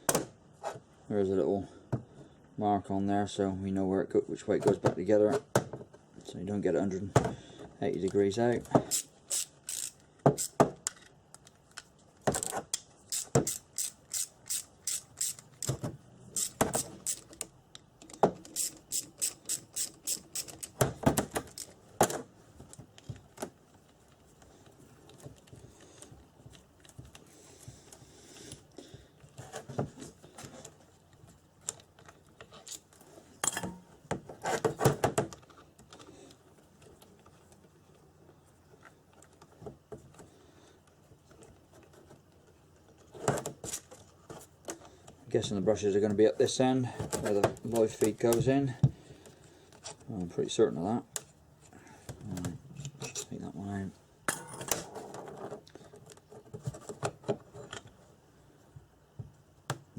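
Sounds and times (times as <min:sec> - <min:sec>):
ratchet clicking: 0:08.9 - 0:10.6, 0:13.1 - 0:15.7, 0:16.4 - 0:17.3, 0:18.5 - 0:20.8.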